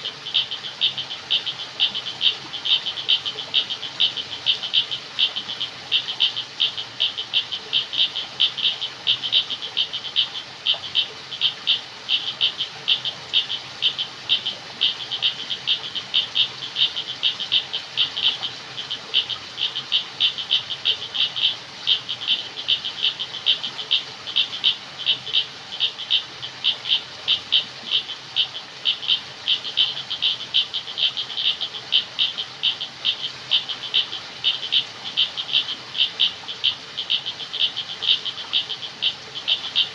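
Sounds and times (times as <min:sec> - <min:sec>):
faint background hiss: 0:00.0 - 0:39.9
frogs calling: 0:00.0 - 0:39.9.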